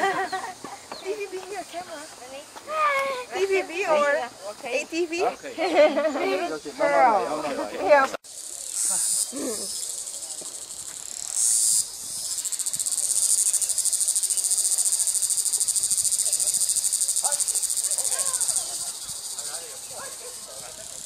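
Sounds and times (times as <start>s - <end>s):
cicada buzzing: 0.0s - 7.2s, 7.9s - 21.0s.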